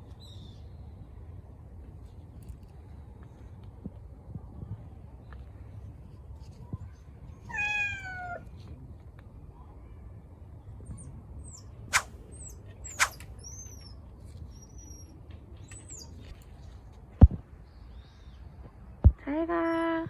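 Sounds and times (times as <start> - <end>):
cat meowing: 7.5 - 8.4
sharp clicks: 11.9 - 12.1, 12.9 - 13.2.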